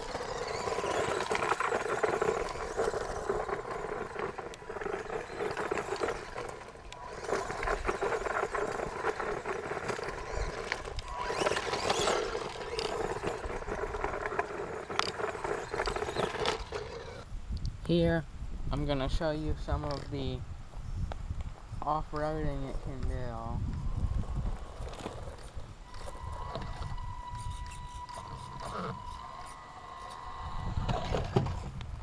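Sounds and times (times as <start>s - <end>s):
remote-control truck motor whine: 0.0s - 17.3s, 23.8s - 31.9s
tyres crackling on pebbles: 0.0s - 17.3s, 21.8s - 32.0s.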